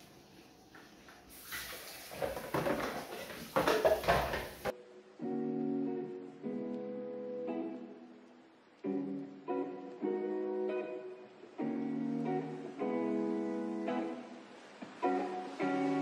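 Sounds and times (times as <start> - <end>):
acoustic guitar music: 4.7 - 16.0.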